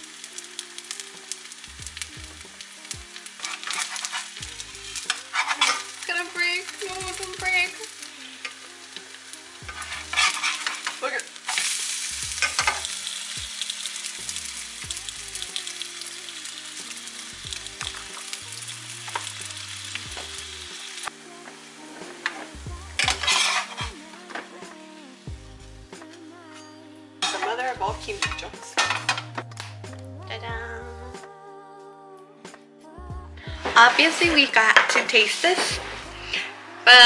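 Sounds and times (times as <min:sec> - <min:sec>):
batter sizzling in oil: 0:00.0 - 0:29.9, 0:33.6 - 0:37.0
scraping in frying pan: 0:03.2 - 0:07.0, 0:07.8 - 0:14.1, 0:23.1 - 0:24.0.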